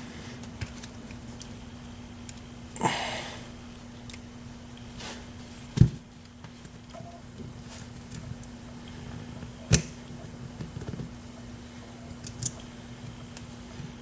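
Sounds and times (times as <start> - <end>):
steady low hum: 0.0 - 14.0
person sniffing: 2.8 - 3.5.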